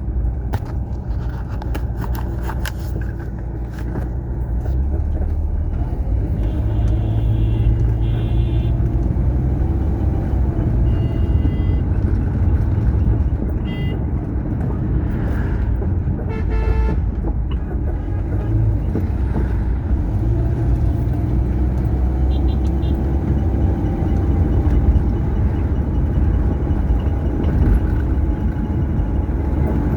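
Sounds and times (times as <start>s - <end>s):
vehicle rumble on highway: 0.0s - 29.9s
vehicle horns honking: 6.3s - 9.0s, 10.6s - 12.0s, 13.6s - 14.2s, 16.2s - 19.0s, 22.2s - 23.2s.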